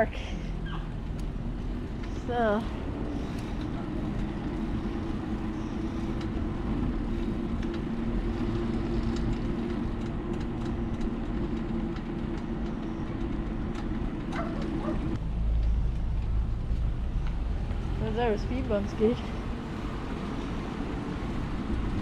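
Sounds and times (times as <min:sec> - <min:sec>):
car engine and road hum: 0:00.0 - 0:22.0.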